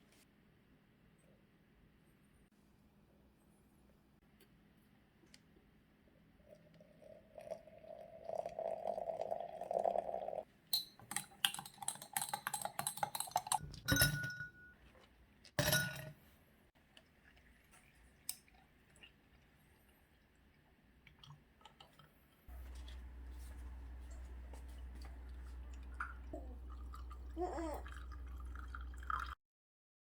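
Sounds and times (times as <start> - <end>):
dishes and utensils clinking: 10.8 - 14.8, 15.6 - 16.2.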